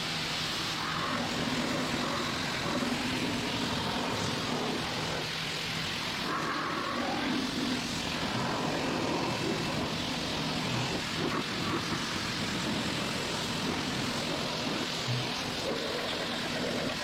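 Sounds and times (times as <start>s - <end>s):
pressure washer spraying: 0.0s - 17.0s.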